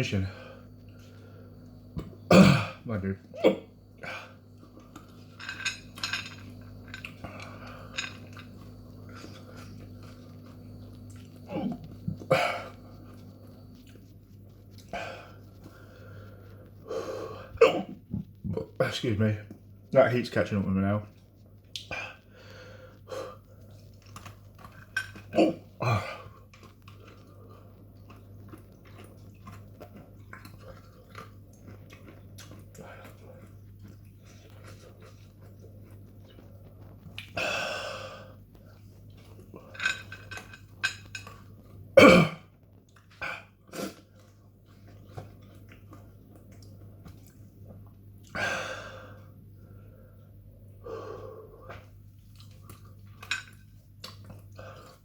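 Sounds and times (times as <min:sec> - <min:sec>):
person chewing crunchy snacks: 0:23.4 - 0:37.4.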